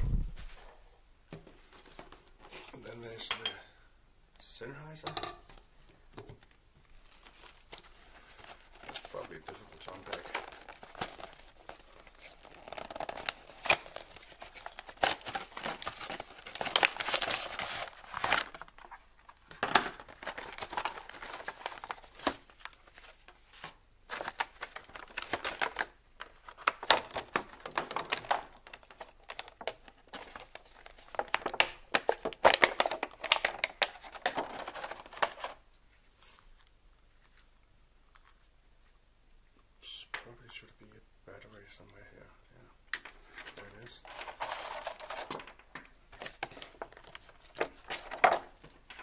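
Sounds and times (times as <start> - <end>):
packaging crinkling and tearing: 7.0 - 35.7, 43.0 - 49.0.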